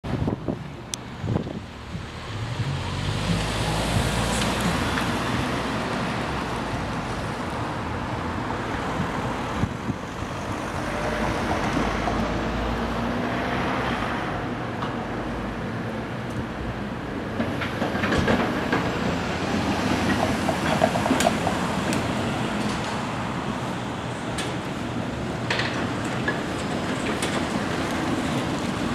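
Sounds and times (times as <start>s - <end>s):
wind on microphone: 0.0s - 7.4s, 8.5s - 13.0s
street traffic rumble: 0.0s - 28.9s.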